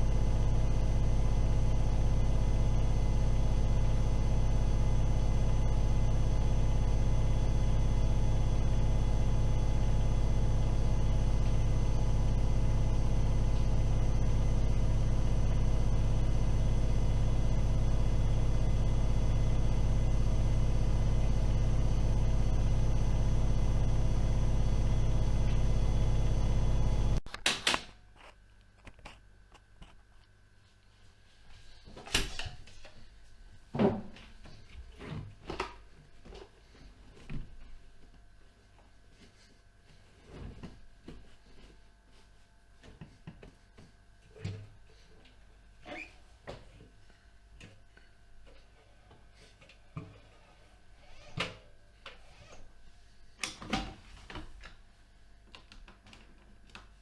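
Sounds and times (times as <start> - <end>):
washing machine humming: 0.0 - 27.3.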